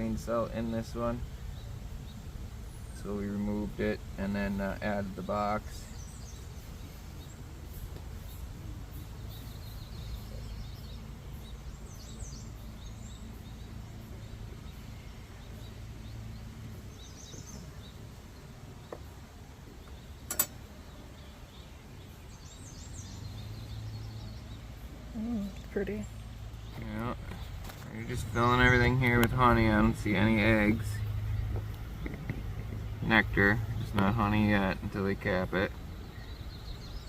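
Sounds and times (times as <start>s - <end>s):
honey bees humming: 0.0s - 37.0s
faint bird chirps: 5.1s - 29.1s
sharp click: 20.3s - 20.6s.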